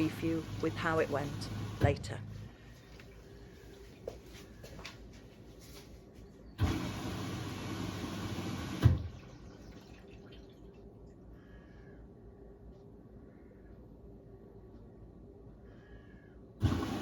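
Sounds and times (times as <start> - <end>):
water rushing into drum: 6.6 - 10.8, 16.6 - 17.0.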